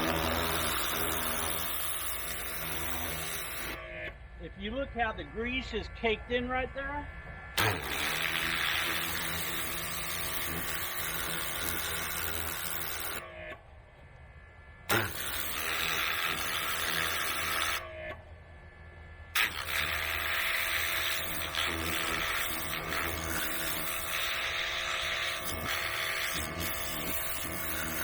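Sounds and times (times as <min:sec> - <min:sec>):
pressure washer jet spraying: 0:19.4 - 0:28.0.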